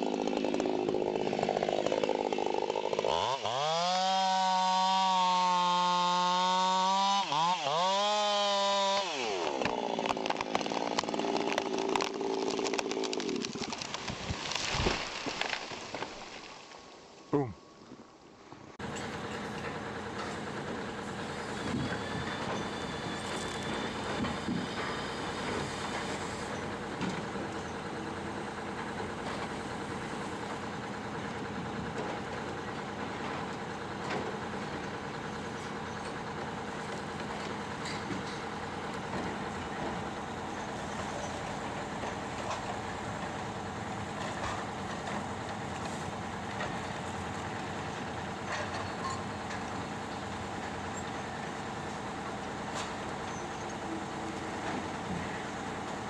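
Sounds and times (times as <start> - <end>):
heavy machine engine running: 18.8 - 56.0.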